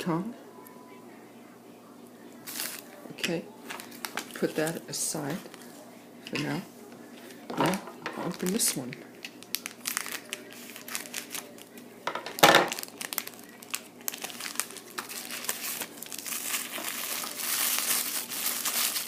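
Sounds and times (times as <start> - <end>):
plastic packet crinkling and tearing: 2.5 - 2.9, 3.7 - 4.8, 7.7 - 19.0.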